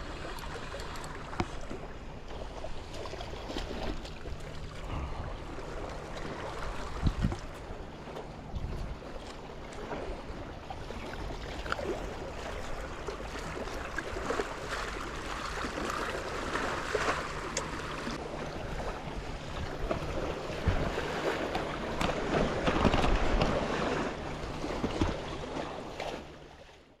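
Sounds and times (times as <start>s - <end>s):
sea water washing and splashing: 0.0s - 27.0s
wind on microphone: 6.8s - 7.6s.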